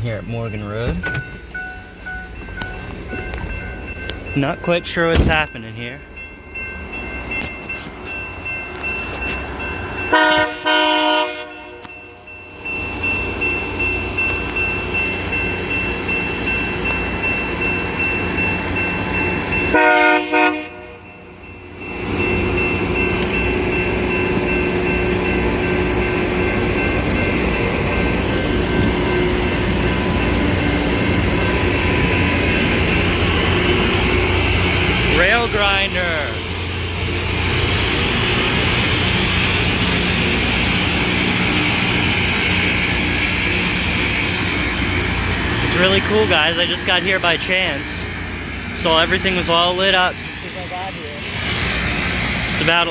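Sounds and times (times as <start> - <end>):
air horn blasts: 10.1 - 11.9, 19.7 - 21.0.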